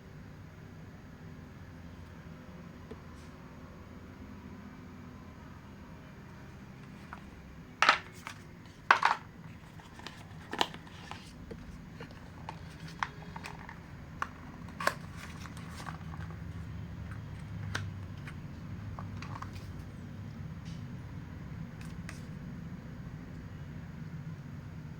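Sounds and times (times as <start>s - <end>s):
faint low hum: 0.0s - 24.9s
packaging rustling: 6.8s - 19.9s
packaging clicks: 7.9s - 19.8s.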